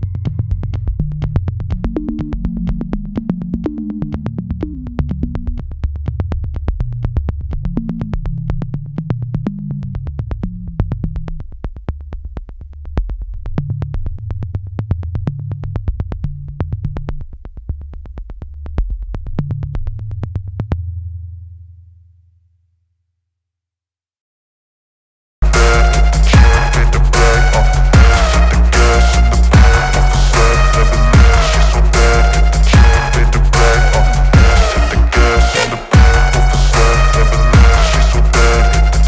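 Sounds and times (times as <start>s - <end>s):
deep synth bass line: 0.0s - 11.5s, 25.4s - 39.0s.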